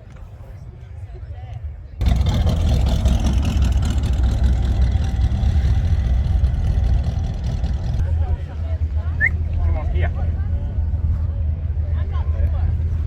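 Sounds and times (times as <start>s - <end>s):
car engine running: 2.0s - 8.0s.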